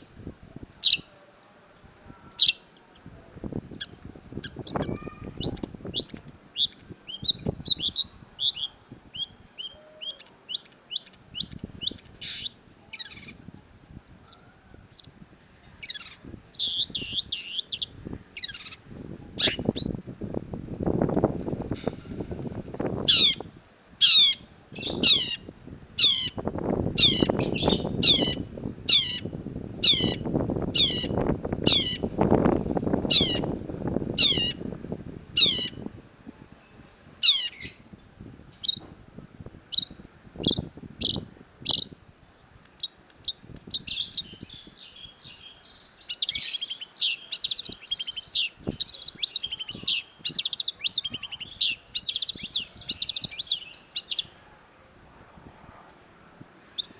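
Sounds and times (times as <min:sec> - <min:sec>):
bird chattering warble: 0:03.8 - 0:18.8, 0:24.0 - 0:26.4, 0:27.0 - 0:32.1, 0:33.0 - 0:33.5, 0:34.2 - 0:34.6, 0:35.4 - 0:35.8
bird calling sharp high notes: 0:04.5 - 0:05.7.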